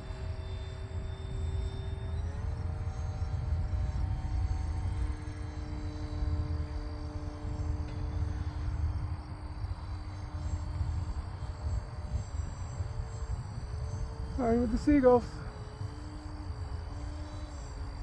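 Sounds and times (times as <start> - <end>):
small electric motor whine: 0.0 - 18.0
wind buffeting microphone: 0.0 - 18.0.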